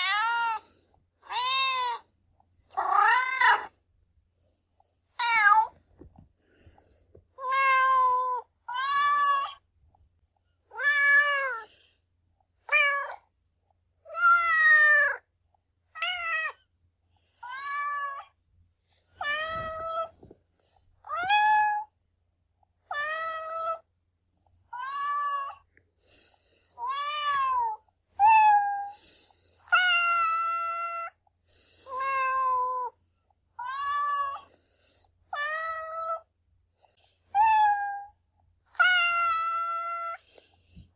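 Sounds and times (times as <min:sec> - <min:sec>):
cat meowing: 0:00.0 - 0:02.1, 0:02.8 - 0:03.8, 0:05.2 - 0:05.8, 0:07.4 - 0:09.6, 0:10.7 - 0:11.7, 0:15.9 - 0:16.6, 0:17.4 - 0:18.4, 0:19.2 - 0:20.1, 0:21.0 - 0:21.9, 0:22.9 - 0:23.8, 0:24.7 - 0:25.7, 0:26.8 - 0:28.9, 0:29.7 - 0:31.2, 0:31.9 - 0:33.0, 0:33.6 - 0:34.5, 0:35.3 - 0:36.3, 0:37.3 - 0:38.1, 0:38.7 - 0:40.2.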